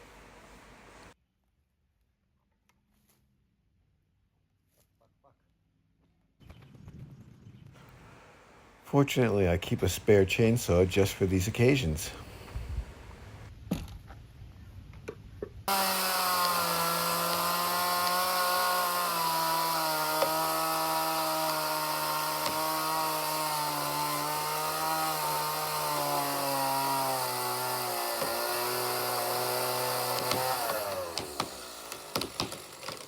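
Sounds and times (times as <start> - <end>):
chainsaw running: 15.7 - 33.0.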